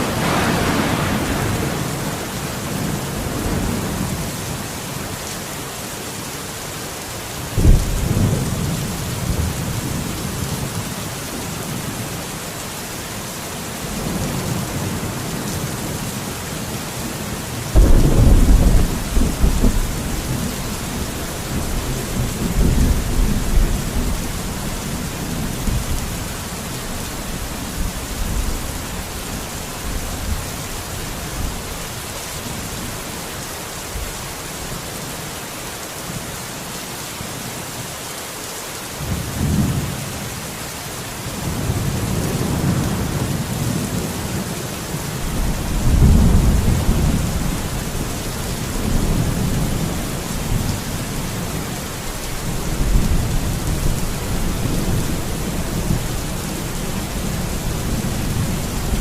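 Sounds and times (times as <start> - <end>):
rolling thunder: 0.0 - 4.3, 7.6 - 10.6, 17.7 - 30.5, 45.2 - 59.0
steady rain: 0.0 - 59.0.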